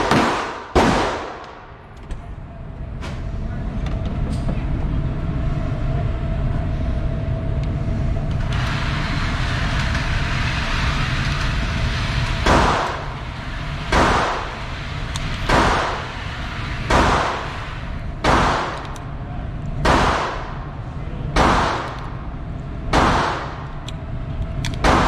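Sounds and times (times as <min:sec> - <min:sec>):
gunshots with short echo: 0:00.0 - 0:01.7, 0:12.4 - 0:13.0, 0:16.9 - 0:17.6, 0:18.2 - 0:18.9, 0:19.8 - 0:20.6, 0:21.4 - 0:22.1, 0:22.9 - 0:23.7, 0:24.8 - 0:25.0.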